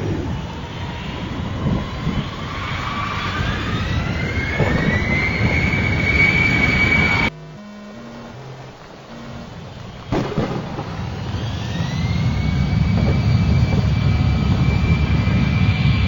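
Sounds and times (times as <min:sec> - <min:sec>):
jet engine whine: 0:00.0 - 0:16.0
low rumble: 0:00.0 - 0:16.0
faint low notes: 0:07.2 - 0:16.0.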